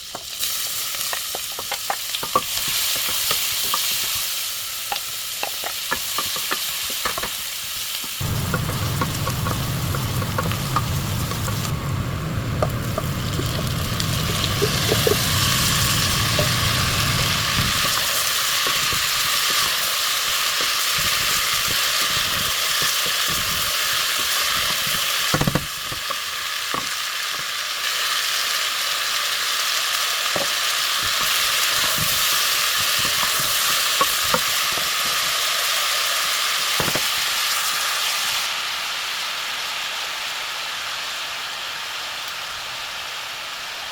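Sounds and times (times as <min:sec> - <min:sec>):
vegetables sizzling in a pot: 0:00.0 - 0:43.9
low hum: 0:08.2 - 0:18.2.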